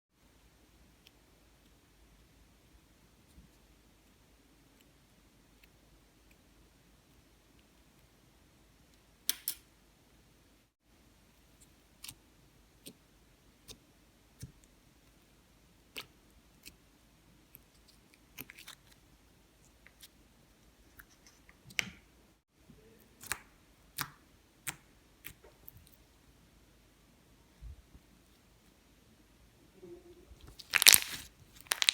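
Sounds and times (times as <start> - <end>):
slime clicking and popping: 30.6 - 31.9.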